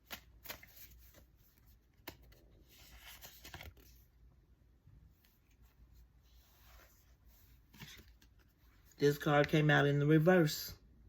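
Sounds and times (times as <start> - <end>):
cards sliding rustle: 0.0 - 4.1, 5.2 - 9.0.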